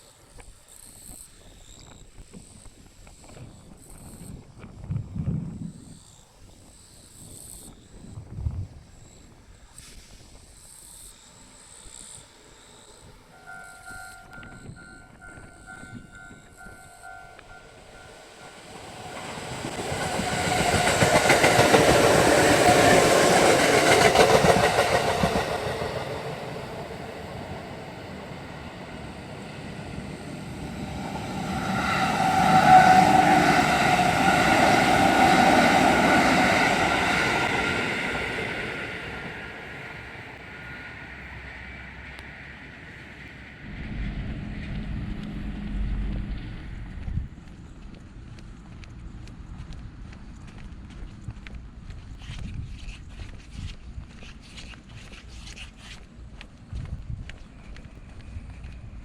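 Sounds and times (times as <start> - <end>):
trains passing: 11.2 - 50.9
level-crossing alarm dings: 13.3 - 19.8.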